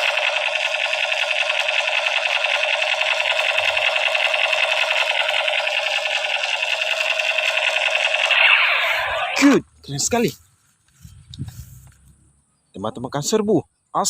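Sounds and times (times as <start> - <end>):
toy machine gun rattling: 0.0 - 9.0.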